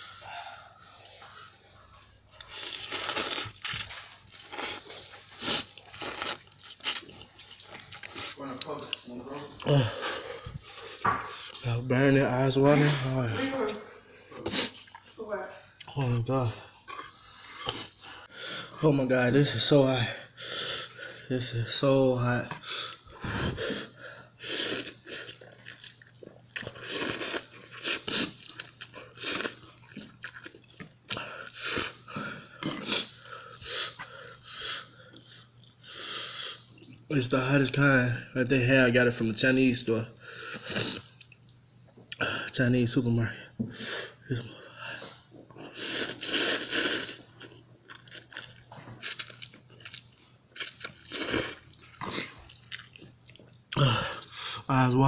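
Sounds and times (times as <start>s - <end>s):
wet chewing of noodles: 0.0s - 11.7s, 14.1s - 15.2s, 15.8s - 18.8s, 22.5s - 37.1s, 40.2s - 42.2s, 43.8s - 54.7s.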